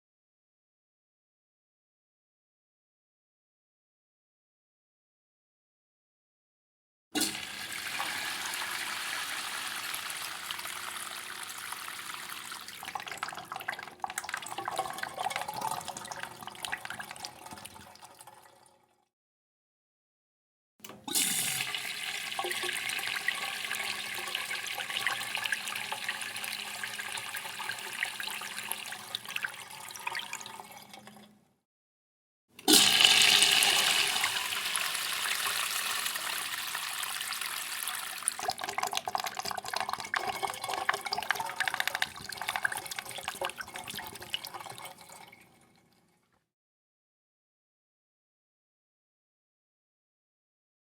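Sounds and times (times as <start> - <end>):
urinal flushing: 7.2 - 18.7, 21.1 - 31.4, 32.7 - 45.7.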